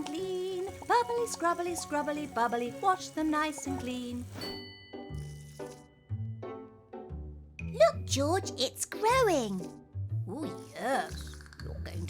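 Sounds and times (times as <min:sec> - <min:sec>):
children's music: 0:00.0 - 0:05.1, 0:06.1 - 0:11.8.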